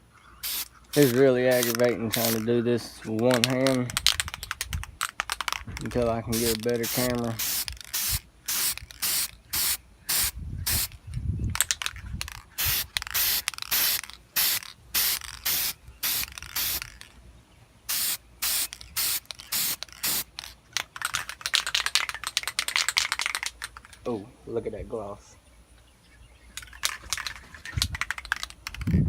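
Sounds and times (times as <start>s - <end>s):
spray paint hissing bursts: 0.4s - 2.5s, 6.2s - 11.0s, 12.6s - 17.0s, 17.9s - 20.5s.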